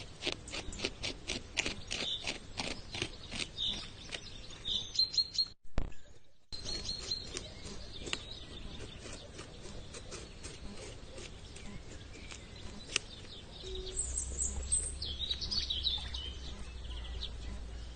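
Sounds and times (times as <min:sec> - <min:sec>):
beaver gnawing wood: 0:00.0 - 0:04.8, 0:06.6 - 0:15.7
birds chirping: 0:00.0 - 0:17.9.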